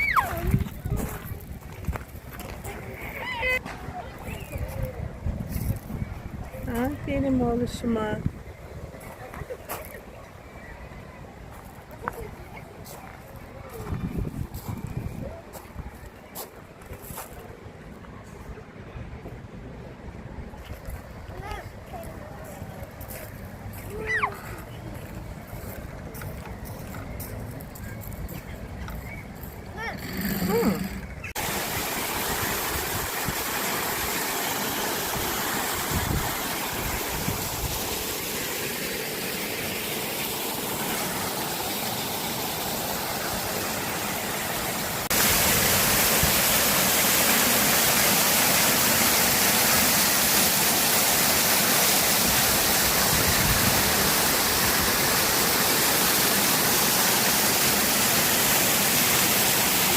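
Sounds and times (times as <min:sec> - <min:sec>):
waterfall rushing: 0:00.0 - 0:00.5, 0:30.0 - 0:59.9.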